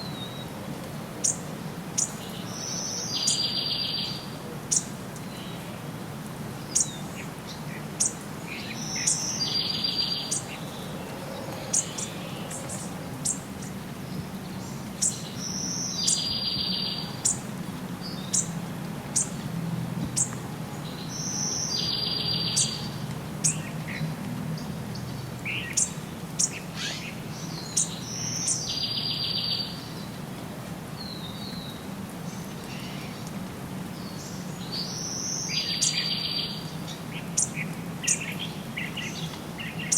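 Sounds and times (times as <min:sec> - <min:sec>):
birds chirping and singing: 0:06.8 - 0:13.8, 0:14.5 - 0:17.4, 0:25.0 - 0:30.0.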